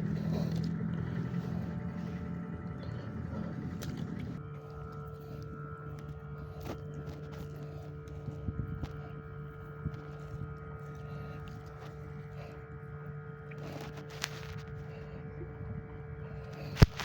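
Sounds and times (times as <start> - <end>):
steady motor hum: 0.0 - 17.0.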